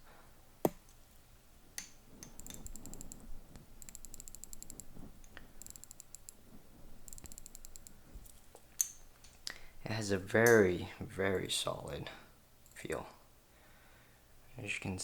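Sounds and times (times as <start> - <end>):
watch crown ratcheting clicks: 2.2 - 3.2, 3.8 - 6.4, 7.0 - 8.4.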